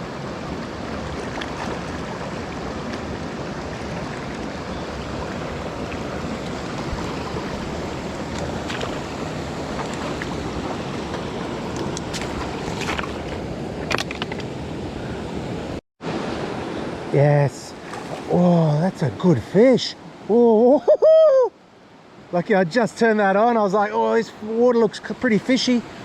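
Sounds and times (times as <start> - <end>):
water rushing over rocks: 0.0 - 14.8.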